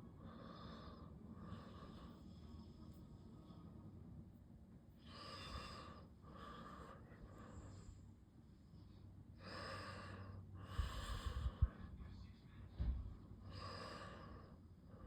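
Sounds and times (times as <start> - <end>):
faint low hum: 0.0 - 15.0
person breathing close to microphone: 5.0 - 12.0.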